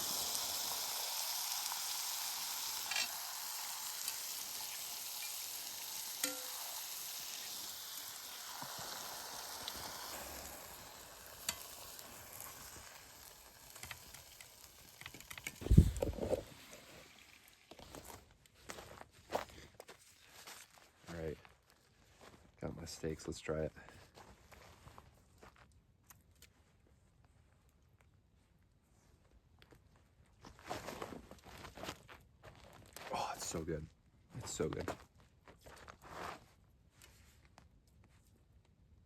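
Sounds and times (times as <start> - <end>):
steaks sizzling in a pan: 0.0 - 17.1.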